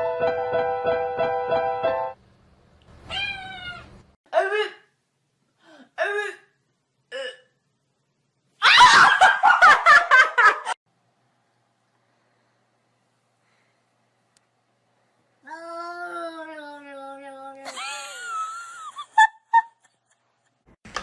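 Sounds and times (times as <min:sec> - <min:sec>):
cat yowling: 0:03.1 - 0:03.9
cat meowing: 0:03.1 - 0:04.0.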